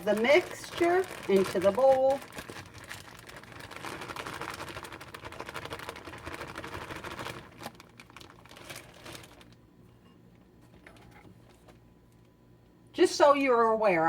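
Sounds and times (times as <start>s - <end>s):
coleslaw rustling from plastic bag: 0.0s - 9.6s.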